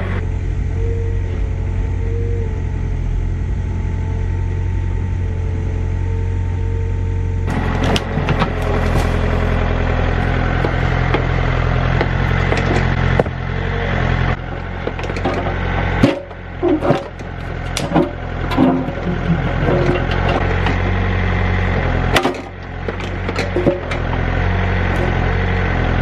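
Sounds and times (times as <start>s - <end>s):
excavator engine running: 0.0s - 26.0s
wood cracking: 7.5s - 13.4s, 14.8s - 21.0s.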